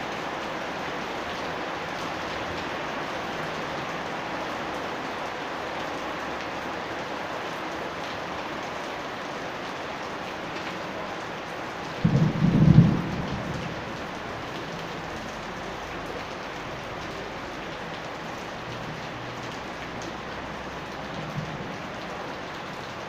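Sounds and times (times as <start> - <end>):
heavy rain falling: 0.0 - 23.0
thunder clap: 12.0 - 13.8.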